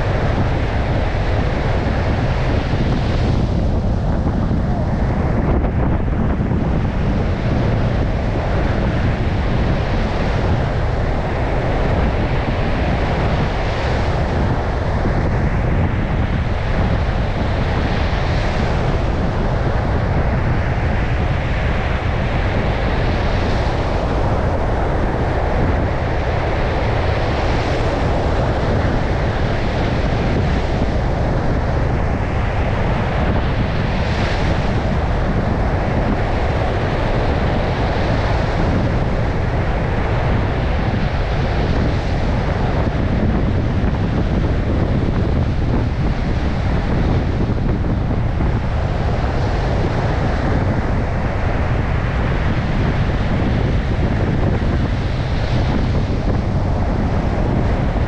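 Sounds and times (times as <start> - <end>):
surf pounding a beach: 0.0 - 58.0
wind buffeting microphone: 0.0 - 58.0.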